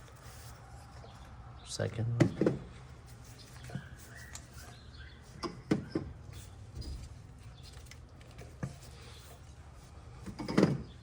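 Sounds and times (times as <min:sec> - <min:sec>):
plastic parts knocking and clunking: 0:10.2 - 0:11.0.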